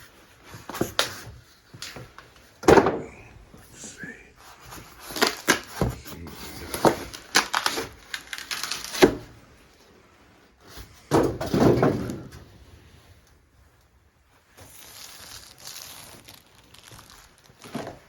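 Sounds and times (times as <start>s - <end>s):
tool box knocks and rattles: 11.1s - 12.4s.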